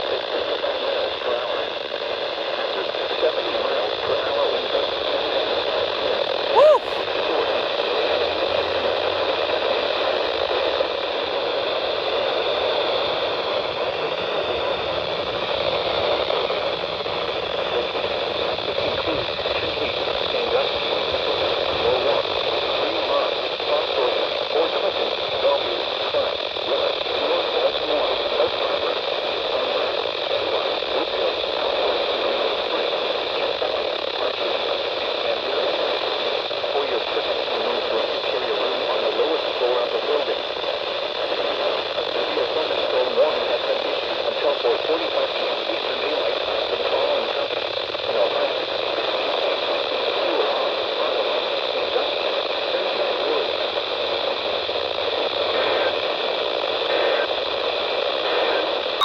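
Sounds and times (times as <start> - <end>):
radio static hiss: 50.1 - 58.8.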